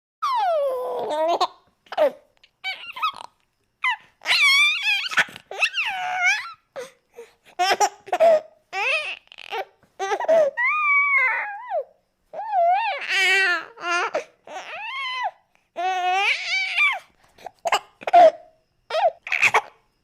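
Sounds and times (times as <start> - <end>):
baby laughing and babbling: 0.4 - 6.4.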